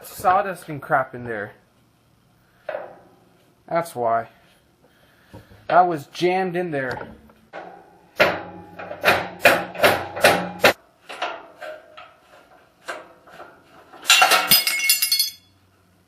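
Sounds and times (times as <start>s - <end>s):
hard knocks on metal: 8.2s - 10.8s.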